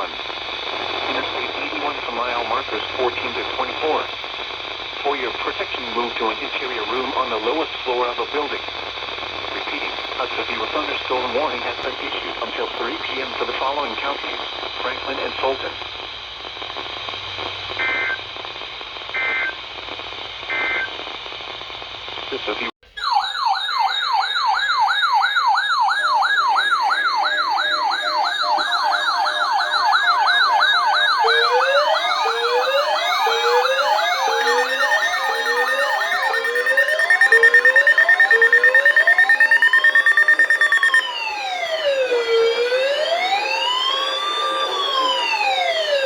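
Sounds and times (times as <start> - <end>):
electronic siren: 22.9 - 46.0.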